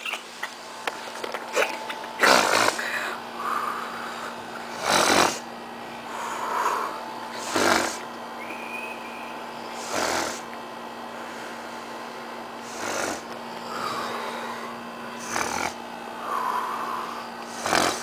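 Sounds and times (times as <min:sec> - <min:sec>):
man snoring: 0:02.2 - 0:03.9, 0:04.7 - 0:05.4, 0:06.1 - 0:08.0, 0:09.8 - 0:10.4, 0:12.6 - 0:18.0.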